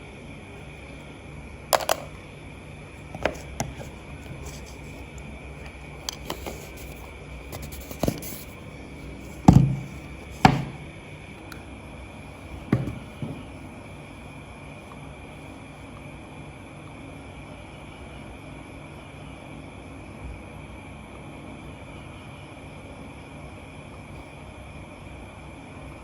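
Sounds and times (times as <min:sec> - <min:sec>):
steady background hum: 0:00.0 - 0:26.0
knocks and thumps: 0:09.4 - 0:10.8, 0:12.7 - 0:13.5.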